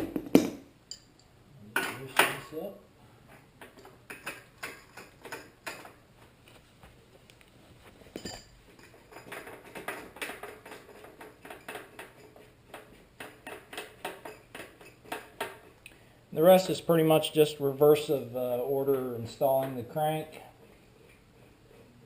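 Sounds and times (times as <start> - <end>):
metal tool parts clinking: 8.2 - 12.4.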